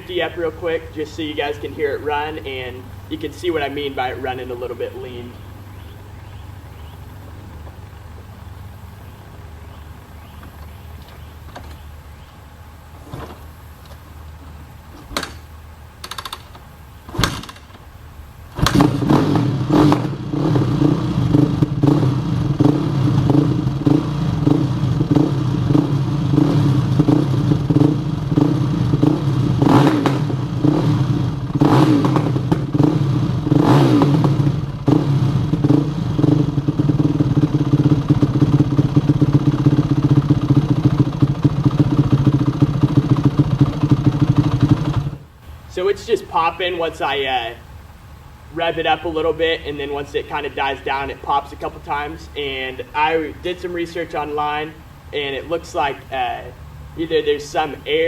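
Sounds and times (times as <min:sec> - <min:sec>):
dirt bike engine revving: 0:17.0 - 0:17.8, 0:18.5 - 0:45.9.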